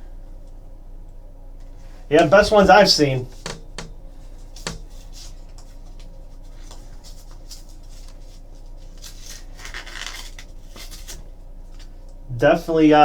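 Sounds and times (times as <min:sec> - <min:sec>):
low room hum: 0:00.0 - 0:13.0
wrapper rustle: 0:04.4 - 0:11.9.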